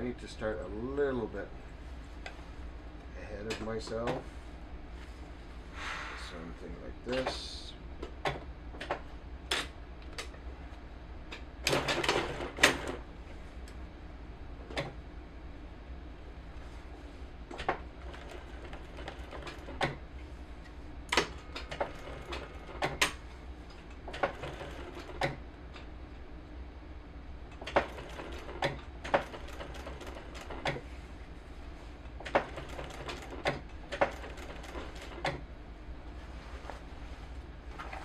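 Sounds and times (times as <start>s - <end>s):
sewing machine clacking: 11.6s - 13.0s, 24.1s - 25.4s, 27.6s - 30.8s, 32.2s - 35.4s.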